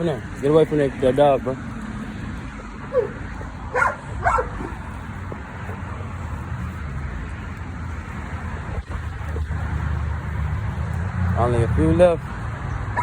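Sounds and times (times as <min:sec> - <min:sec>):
dog yelp: 0:02.9 - 0:04.7
dog barking: 0:02.9 - 0:04.8.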